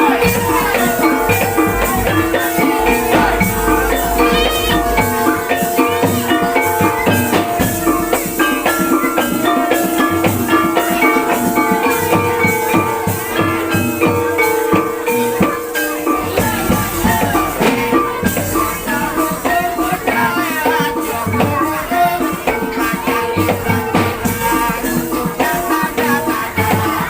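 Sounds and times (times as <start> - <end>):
fast dense drumming: 0.0 - 5.7
rattling percussion: 0.0 - 27.0
ringing pitched tones: 0.1 - 9.3.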